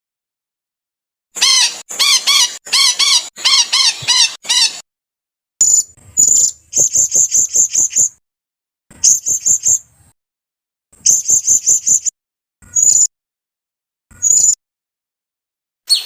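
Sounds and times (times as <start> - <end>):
songbird chirping: 5.6 - 8.2, 9.0 - 9.9, 11.0 - 12.1, 12.7 - 13.1, 14.2 - 14.6.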